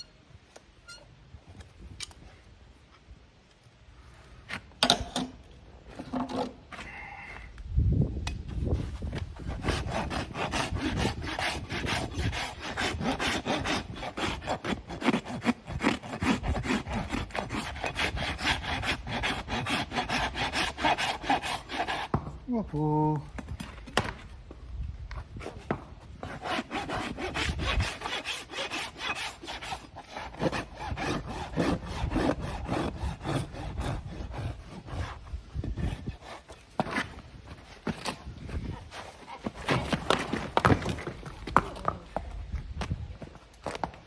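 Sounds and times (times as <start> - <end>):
hoof rasp scraping: 8.5 - 22.4, 23.4 - 41.9.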